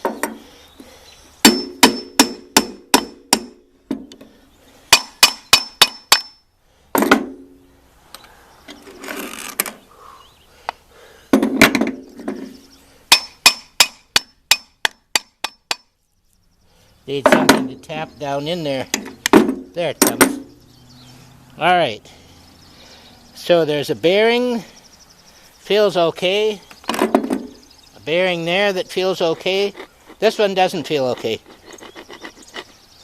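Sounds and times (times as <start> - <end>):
hammer striking steel shaft: 4.9 - 6.4, 13.1 - 15.9.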